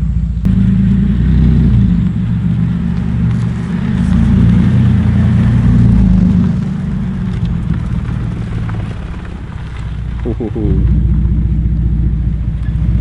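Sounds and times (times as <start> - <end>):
loud deep car exhaust drone: 0.0 - 13.0.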